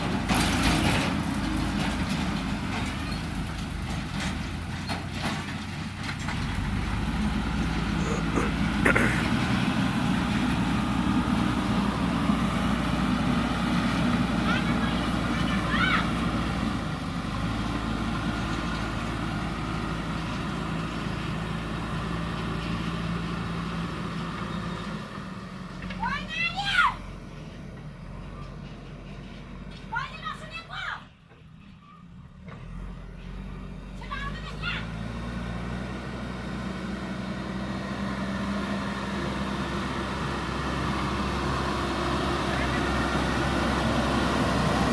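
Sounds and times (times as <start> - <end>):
diesel engine running: 0.0 - 30.9, 32.2 - 44.9.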